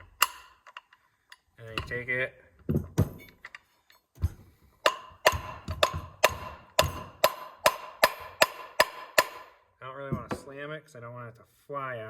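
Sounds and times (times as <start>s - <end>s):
hammer striking metal: 4.8s - 10.5s.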